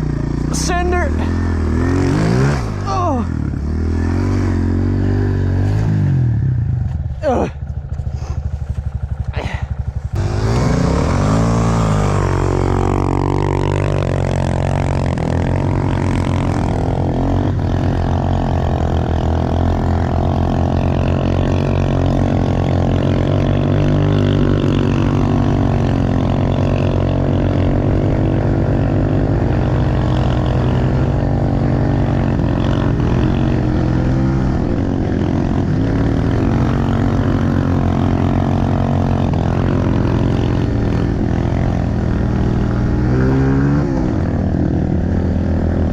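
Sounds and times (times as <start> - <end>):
pit bike engine revving: 0.0 - 45.9.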